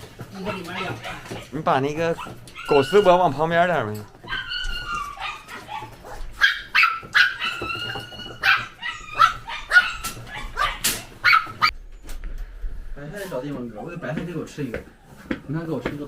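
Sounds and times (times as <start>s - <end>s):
dog whining and yipping: 0.3s - 11.8s.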